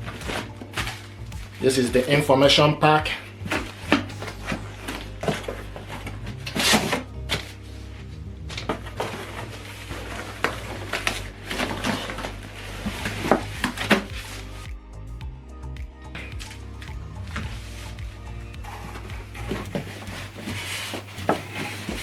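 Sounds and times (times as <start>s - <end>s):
background music with bass: 0.0s - 22.0s
cardboard and paper packaging rustling: 18.7s - 22.0s.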